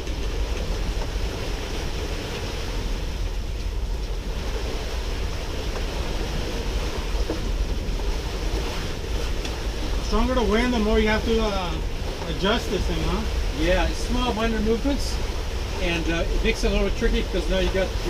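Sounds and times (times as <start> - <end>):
water washing along hull: 0.0 - 18.0.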